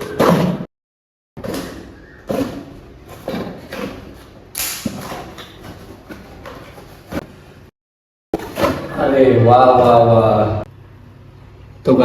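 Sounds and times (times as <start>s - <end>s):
knife cutting cardboard box: 1.4s - 7.3s.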